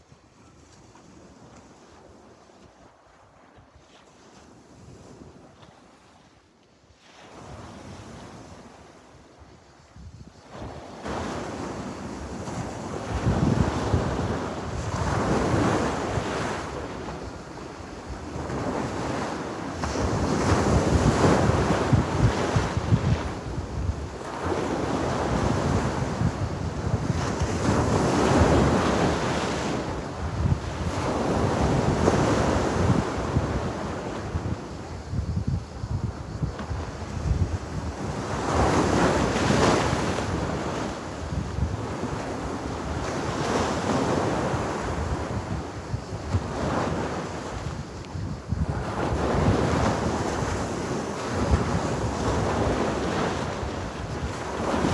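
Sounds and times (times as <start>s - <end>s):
sea waves breaking on shore: 10.4s - 35.0s, 35.8s - 48.0s, 48.6s - 54.9s.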